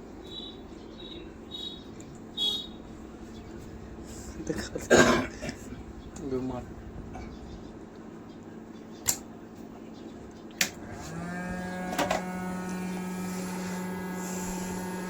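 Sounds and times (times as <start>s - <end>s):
hot air blower humming: 1.4s - 8.1s, 10.6s - 15.0s
sharp clicks: 9.0s - 9.3s.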